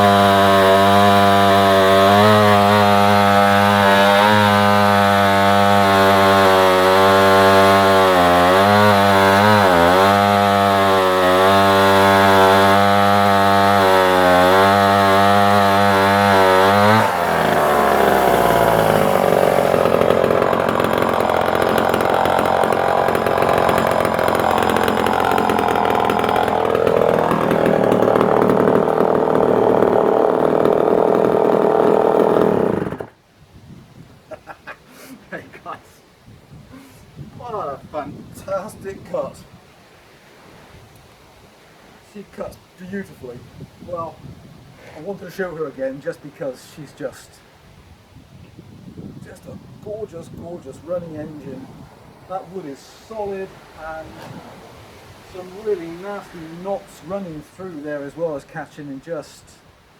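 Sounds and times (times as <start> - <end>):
chainsaw cutting log: 0.0 - 33.2, 52.3 - 57.5.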